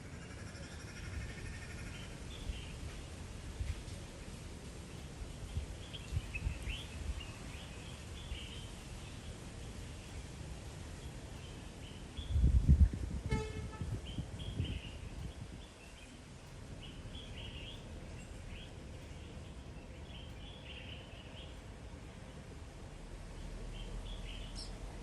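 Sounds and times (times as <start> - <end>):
outdoor background noise: 0.0 - 25.0
birds chirping: 5.0 - 10.4, 13.4 - 22.4
horn toot: 13.2 - 14.1.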